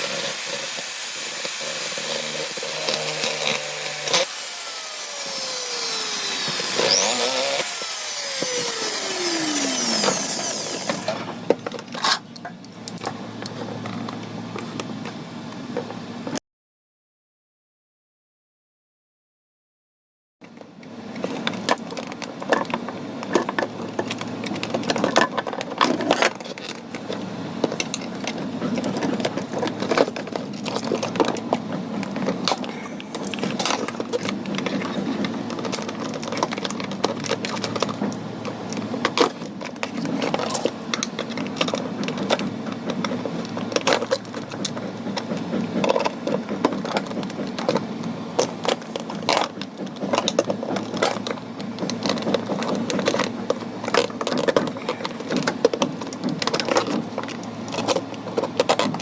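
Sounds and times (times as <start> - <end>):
small motor humming: 0.0 - 11.3.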